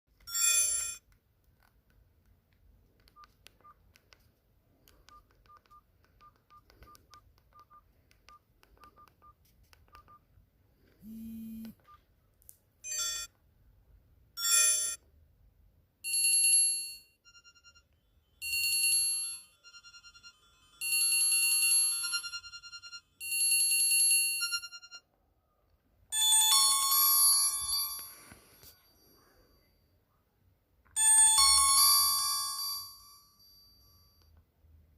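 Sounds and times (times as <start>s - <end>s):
faint regular beeps: 4.9s - 10.3s, 17.2s - 18.0s
phone ringtone previews: 18.5s - 25.0s.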